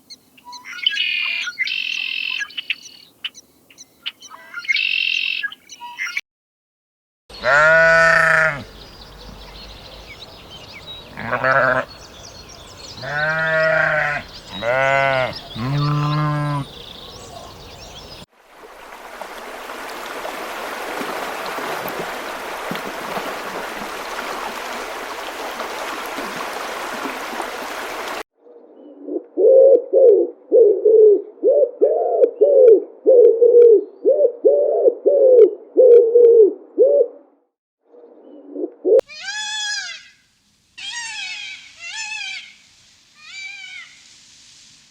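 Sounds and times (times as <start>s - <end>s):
animal bleating: 7.3s - 8.7s, 11.1s - 11.9s, 13.0s - 16.7s.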